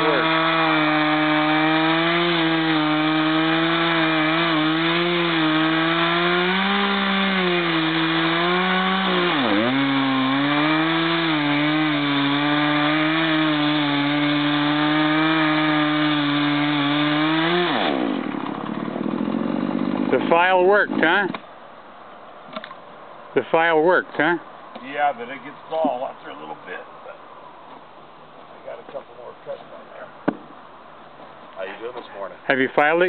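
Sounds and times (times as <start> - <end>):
chainsaw cutting wood: 0.0 - 21.4.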